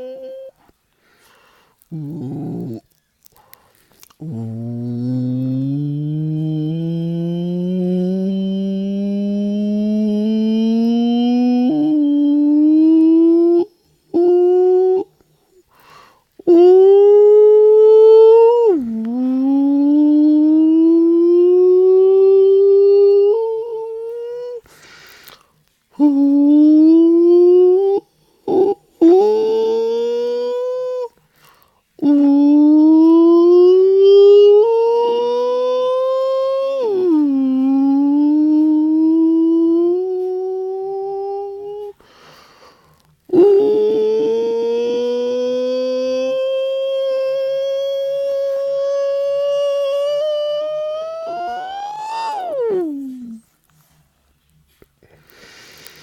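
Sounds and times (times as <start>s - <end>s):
person singing wordless tones: 0.0s - 0.7s, 1.8s - 3.0s, 4.0s - 15.7s, 16.4s - 24.7s, 25.9s - 31.2s, 32.0s - 42.0s, 43.2s - 53.8s
person breathing: 0.6s - 2.4s, 3.3s - 5.6s, 15.4s - 16.3s, 24.6s - 25.7s, 31.2s - 31.9s, 41.9s - 43.1s, 55.0s - 56.0s
man holding wordless tone: 1.4s - 2.8s, 4.2s - 15.2s, 43.3s - 53.5s.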